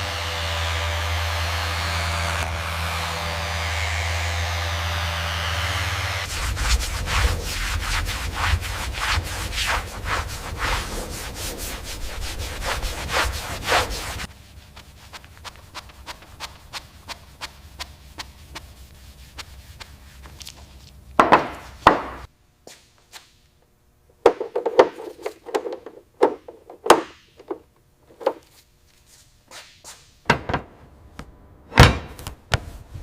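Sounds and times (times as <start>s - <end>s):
rhythmic sanding strokes: 0.0s - 20.9s.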